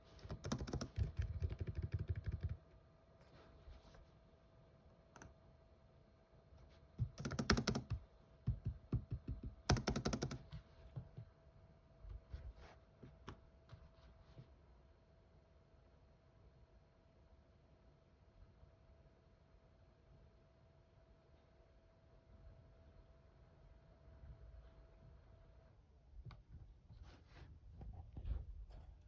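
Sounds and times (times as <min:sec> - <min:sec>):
laptop keyboard typing: 0:00.1 - 0:02.7, 0:07.0 - 0:11.2.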